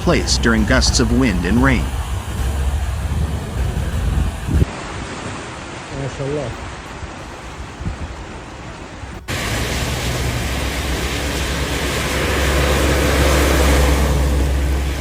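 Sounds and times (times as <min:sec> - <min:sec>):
low vehicle hum: 0:00.0 - 0:04.8, 0:06.5 - 0:15.0
heavy rain: 0:00.0 - 0:15.0
wind: 0:00.0 - 0:15.0.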